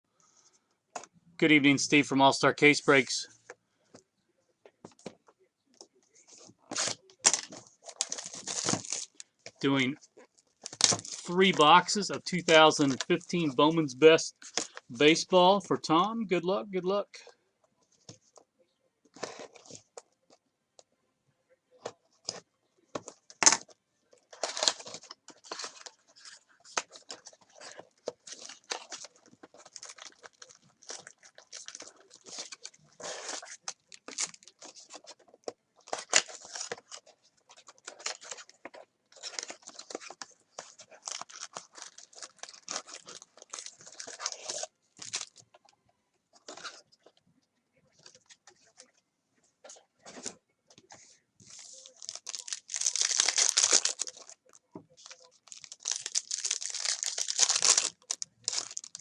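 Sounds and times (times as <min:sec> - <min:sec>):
packaging tearing and crinkling: 0:06.7 - 0:09.2, 0:24.3 - 0:35.2, 0:39.1 - 0:45.4, 0:51.5 - 0:54.4, 0:55.0 - 0:59.0.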